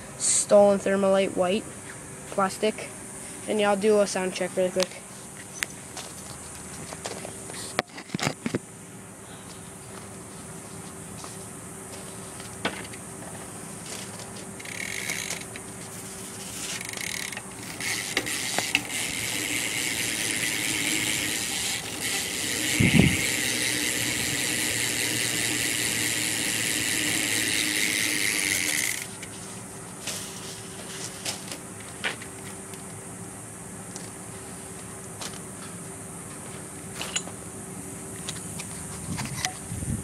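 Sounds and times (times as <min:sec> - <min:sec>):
bike hub ratcheting: 0:14.6 - 0:15.6, 0:16.4 - 0:29.2.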